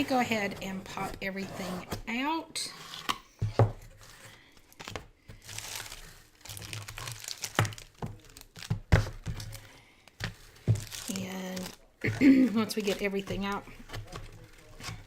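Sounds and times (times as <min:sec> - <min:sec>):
packaging crinkling and rustling: 0:03.9 - 0:15.0.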